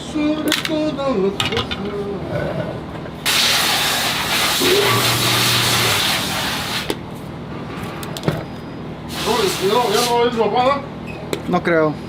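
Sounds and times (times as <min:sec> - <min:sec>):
pressurised jet hissing: 0:03.3 - 0:06.9, 0:09.1 - 0:10.2.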